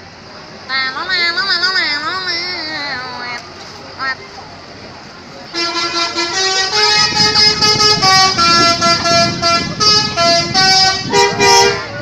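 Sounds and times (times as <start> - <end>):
multi-tone musical horn: 5.6 - 11.9.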